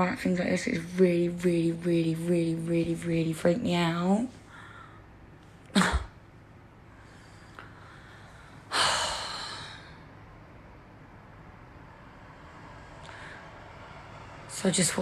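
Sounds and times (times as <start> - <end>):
woman breathing: 4.4 - 5.2, 6.8 - 10.3, 12.1 - 14.5.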